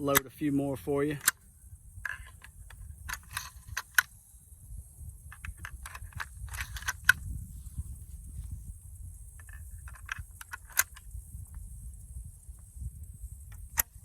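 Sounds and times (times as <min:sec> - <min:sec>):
shotgun shells clicking into magazine: 0:05.3 - 0:07.2, 0:09.4 - 0:11.0.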